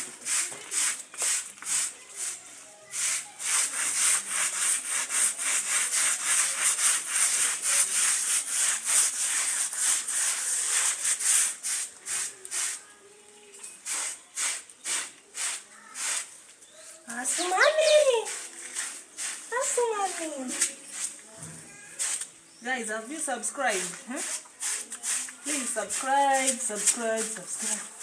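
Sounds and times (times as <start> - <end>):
scrubbing brush on carpet: 0.0 - 12.8, 17.2 - 21.2, 23.7 - 28.0.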